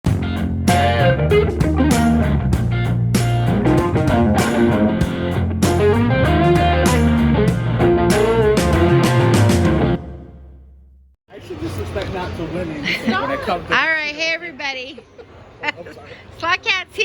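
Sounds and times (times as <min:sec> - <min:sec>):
hard-hitting drum beat: 0:00.0 - 0:10.0
rock electric guitar: 0:00.1 - 0:10.0.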